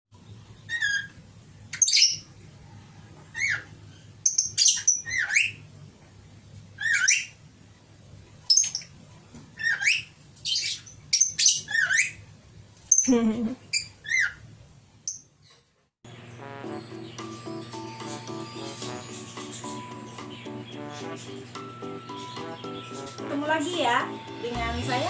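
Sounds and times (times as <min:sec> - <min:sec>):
lovebird squawking: 0:00.7 - 0:01.1, 0:04.3 - 0:05.6, 0:06.8 - 0:07.4, 0:09.6 - 0:12.2, 0:13.7 - 0:14.4.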